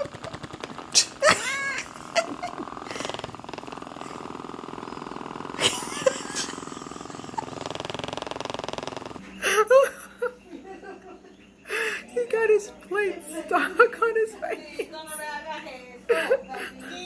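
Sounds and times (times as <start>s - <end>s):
cat purring: 0.0s - 9.3s.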